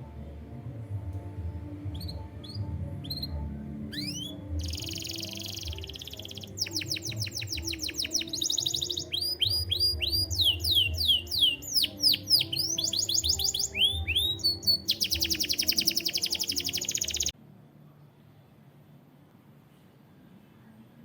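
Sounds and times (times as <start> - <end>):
canary singing: 1.4 - 17.4.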